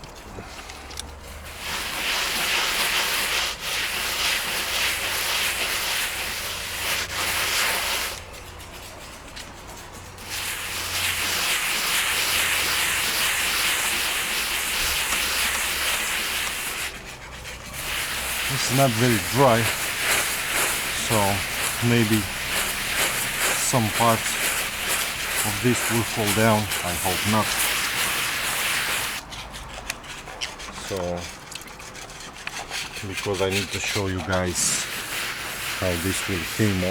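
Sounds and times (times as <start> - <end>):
tool scraping wet mortar: 0.0 - 36.9.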